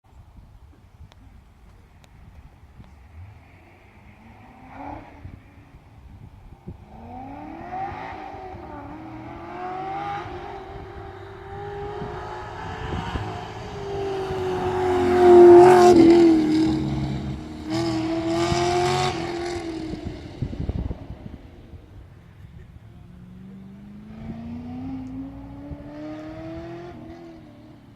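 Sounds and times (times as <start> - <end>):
car engine accelerating hard: 6.9 - 21.5, 22.4 - 27.9.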